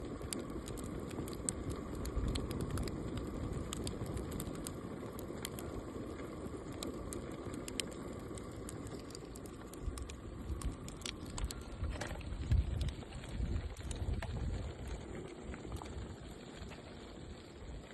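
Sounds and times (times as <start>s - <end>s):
wood fire crackling: 0.0s - 17.9s.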